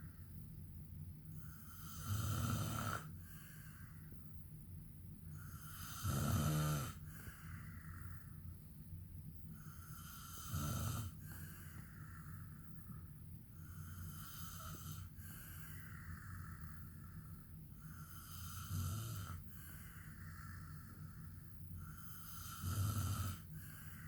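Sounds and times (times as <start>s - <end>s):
quiet breathing: 0.0s - 24.0s
man snoring: 1.5s - 3.1s, 5.4s - 7.1s, 9.6s - 11.4s, 13.6s - 16.9s, 17.8s - 21.0s, 21.9s - 24.0s.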